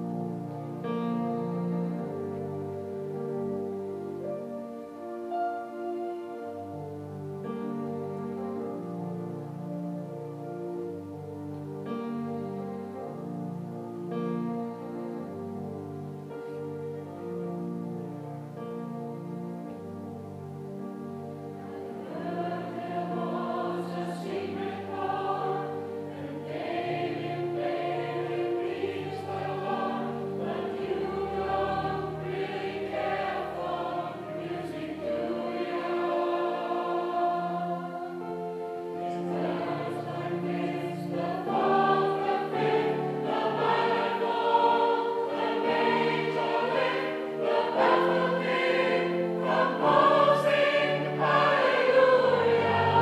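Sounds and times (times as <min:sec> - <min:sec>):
gospel choir singing: 0:21.2 - 0:53.0.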